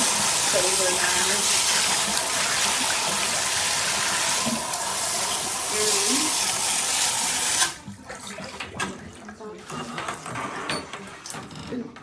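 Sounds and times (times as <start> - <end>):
water spraying from shower head: 0.0 - 7.8.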